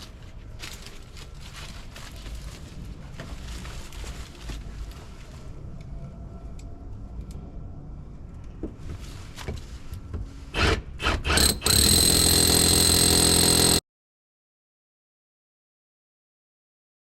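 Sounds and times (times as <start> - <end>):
power tool motor whining: 10.6 - 13.8.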